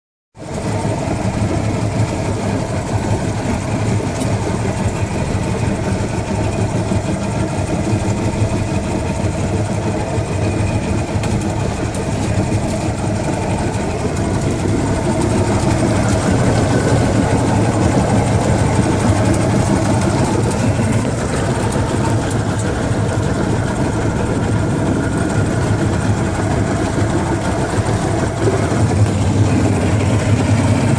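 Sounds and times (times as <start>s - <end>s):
outboard motor running: 0.4s - 30.9s
motor rattle: 10.4s - 30.9s.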